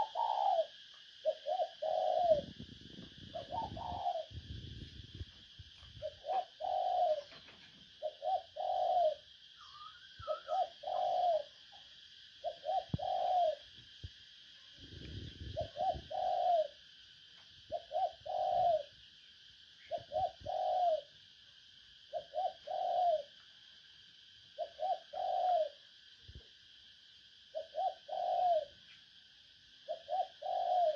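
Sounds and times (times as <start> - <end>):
dove cooing: 0.0 - 4.8, 5.9 - 11.7, 12.4 - 13.8, 15.2 - 16.8, 17.7 - 18.9, 19.9 - 21.2, 22.1 - 23.4, 24.6 - 25.8, 27.5 - 28.8, 29.9 - 30.9
steady high hum: 0.0 - 30.9.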